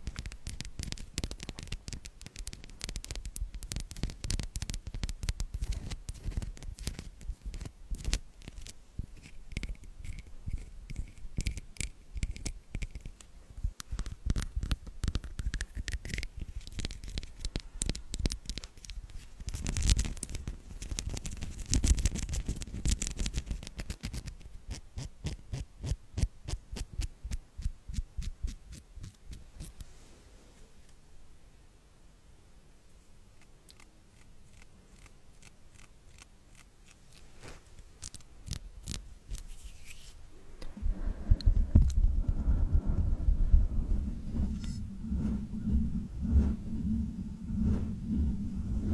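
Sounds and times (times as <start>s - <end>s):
sticky clicks and taps: 0.0s - 8.8s
scratchy rustle: 0.0s - 13.2s, 18.4s - 25.4s, 33.8s - 48.9s.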